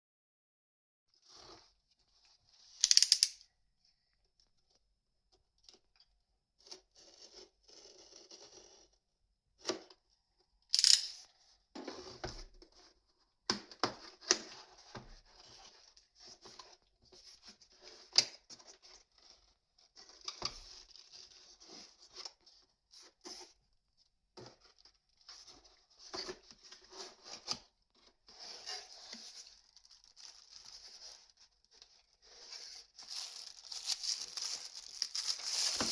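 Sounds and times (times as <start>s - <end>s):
cardboard and plastic rustling: 24.4s - 35.9s.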